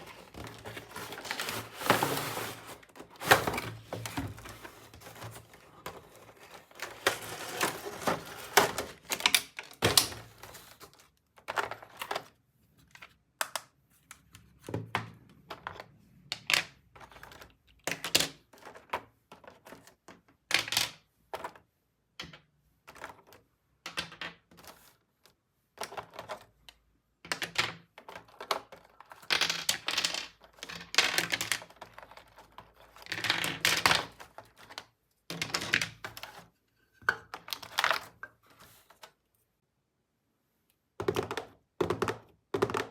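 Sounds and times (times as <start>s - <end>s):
rustling: 0.0s - 8.6s.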